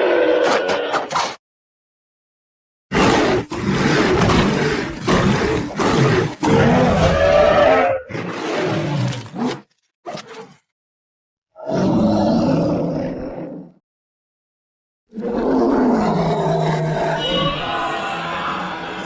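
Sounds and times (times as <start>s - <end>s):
deep growling monster roars: 2.9s - 9.3s, 11.6s - 13.8s, 15.1s - 18.8s.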